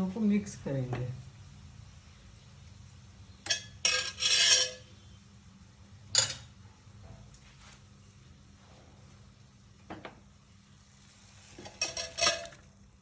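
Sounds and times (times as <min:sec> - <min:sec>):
metal spoon scraping cookware: 0:03.4 - 0:05.1, 0:11.6 - 0:12.6.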